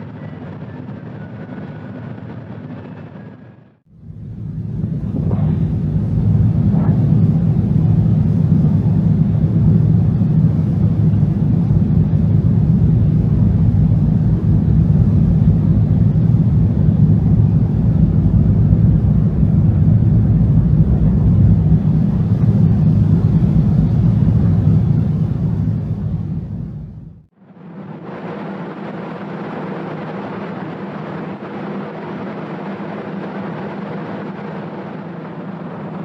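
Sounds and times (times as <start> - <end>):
low rumble: 3.9 - 27.4.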